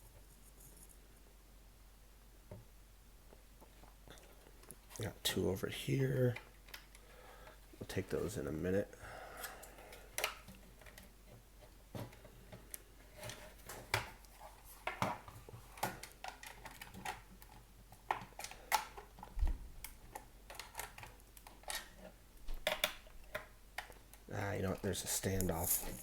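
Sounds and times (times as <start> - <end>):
plastic and metal parts handled: 12.0 - 26.0.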